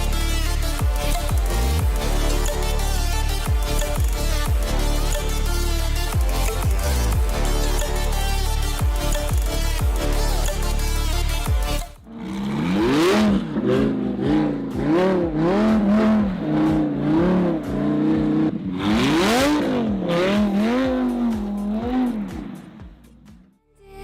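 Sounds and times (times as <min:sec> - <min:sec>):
sports car engine revving: 0:00.0 - 0:23.4.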